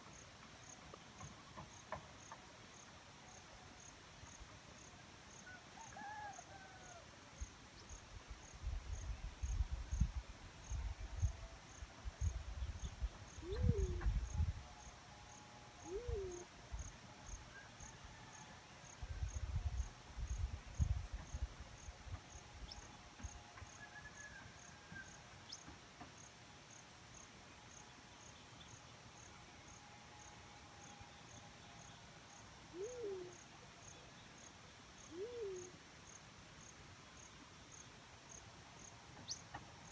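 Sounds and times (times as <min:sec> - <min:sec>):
cricket chirping: 0:00.1 - 0:06.4, 0:07.4 - 0:18.0, 0:25.0 - 0:39.9
dove cooing: 0:13.4 - 0:14.3, 0:15.8 - 0:16.5, 0:32.7 - 0:33.4, 0:35.1 - 0:35.8.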